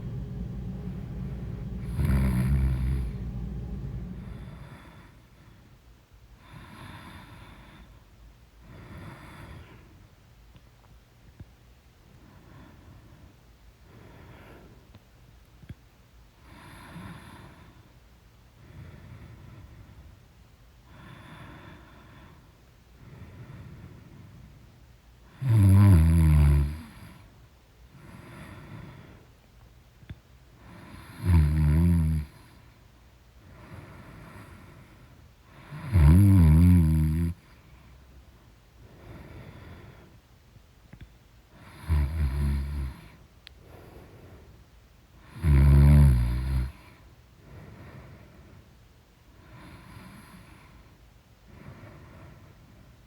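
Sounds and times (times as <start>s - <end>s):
woman snoring loudly: 0.0s - 5.0s, 25.4s - 27.0s, 30.9s - 32.4s, 35.6s - 37.4s, 41.6s - 43.0s, 45.3s - 46.8s
quiet breaths: 0.0s - 53.0s.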